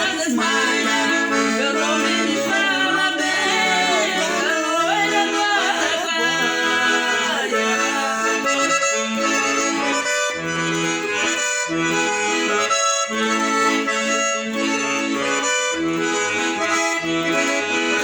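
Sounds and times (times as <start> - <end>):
accordion melody: 0.0 - 18.0.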